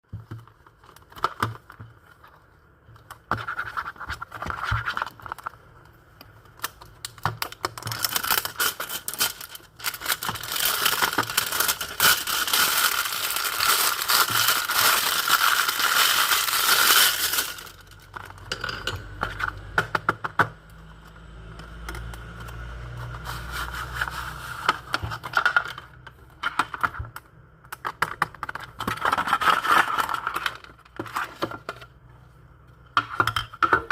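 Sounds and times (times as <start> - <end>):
packaging scratching and scraping: 7.4 - 18.5, 22.8 - 25.9, 28.4 - 31.8.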